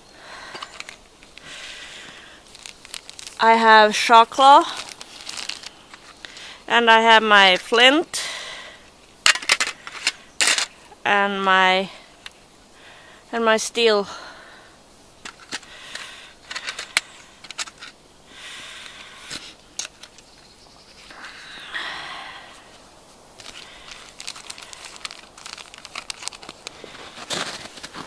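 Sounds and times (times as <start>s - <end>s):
bags rustling and crinkling: 0.3s - 6.6s, 22.4s - 28.0s.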